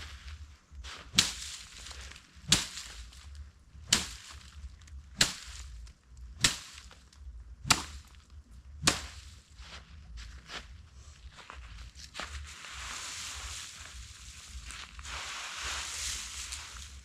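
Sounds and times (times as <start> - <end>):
sharp tool strikes: 1.1 - 1.6, 2.4 - 3.0, 3.8 - 4.5, 5.2 - 5.7, 6.4 - 7.0, 7.6 - 8.1, 8.8 - 9.2.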